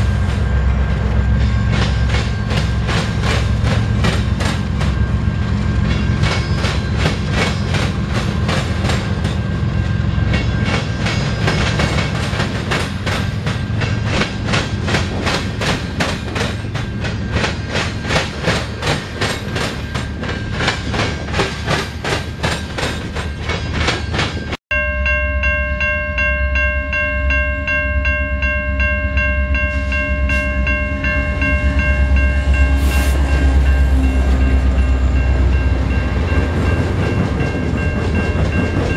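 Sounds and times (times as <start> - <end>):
train wheels clicking over rail joints: 1.0 - 5.1, 5.8 - 9.5, 10.3 - 24.6
locomotive air horn: 31.7 - 35.4.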